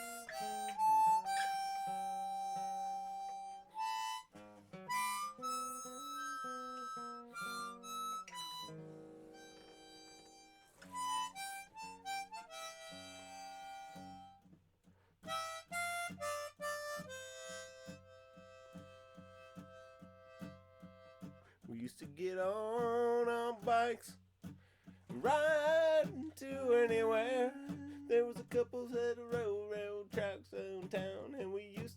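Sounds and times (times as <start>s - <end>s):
harmonica melody: 0.0s - 14.5s, 15.2s - 21.5s
guitar strumming: 0.0s - 14.6s, 15.2s - 21.6s, 22.2s - 31.9s.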